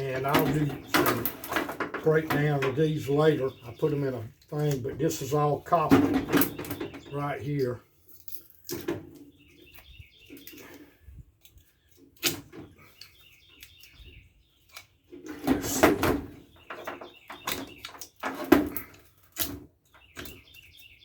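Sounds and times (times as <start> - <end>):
microwave parts clattering: 0.0 - 4.0, 4.6 - 7.2
bird chirping: 0.0 - 7.8, 8.9 - 21.0.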